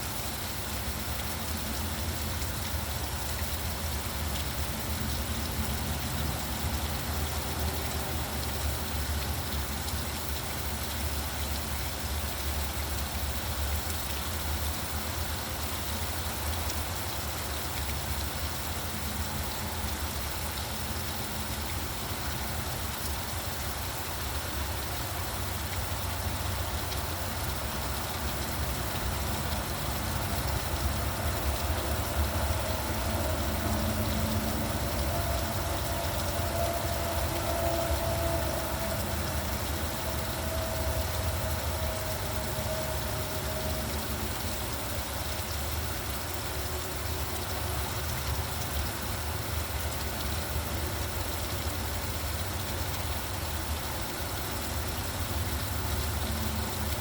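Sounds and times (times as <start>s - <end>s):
low rumble of road traffic: 0.0s - 57.0s
steady rain falling: 0.0s - 57.0s
vehicle engine hum: 19.0s - 57.0s.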